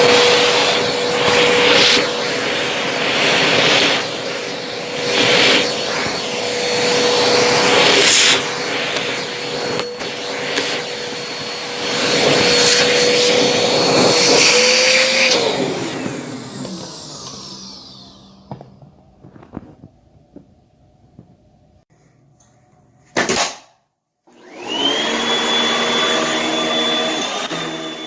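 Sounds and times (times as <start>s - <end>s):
vacuum cleaner running: 0.0s - 19.7s, 24.3s - 28.0s.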